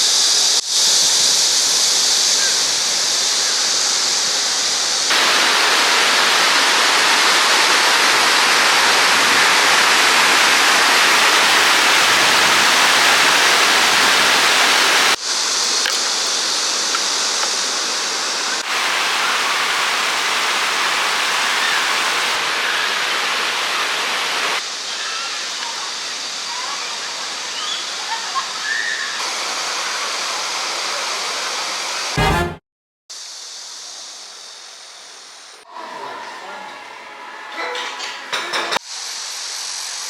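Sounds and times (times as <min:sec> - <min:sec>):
stream water rushing: 0:05.1 - 0:24.6.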